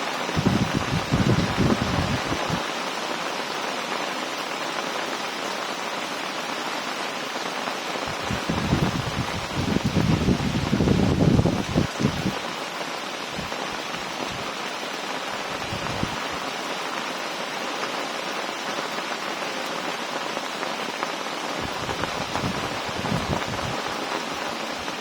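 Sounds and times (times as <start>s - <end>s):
heavy rain falling: 0.0s - 25.0s
wind buffeting microphone: 0.4s - 2.6s, 8.1s - 12.4s, 15.6s - 16.3s, 21.6s - 25.0s.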